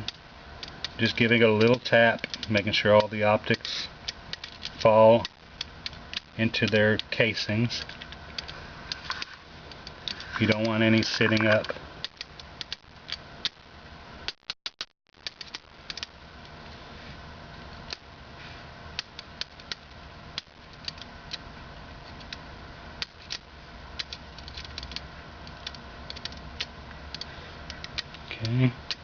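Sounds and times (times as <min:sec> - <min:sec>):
steady low hum: 0:00.0 - 0:14.5, 0:15.2 - 0:29.0
plastic parts clicking and tapping: 0:04.1 - 0:07.1, 0:19.0 - 0:21.4, 0:24.0 - 0:29.0.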